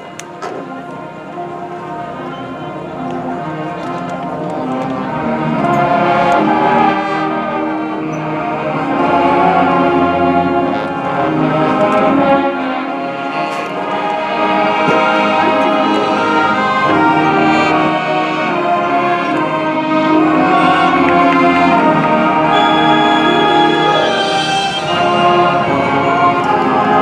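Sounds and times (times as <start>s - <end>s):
marching band playing: 0.0s - 27.0s.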